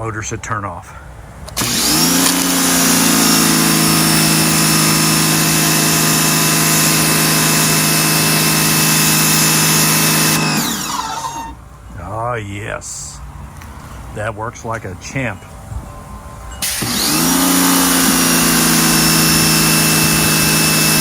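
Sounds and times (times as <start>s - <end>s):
pressure washer motor running: 1.6s - 11.6s, 16.6s - 21.0s.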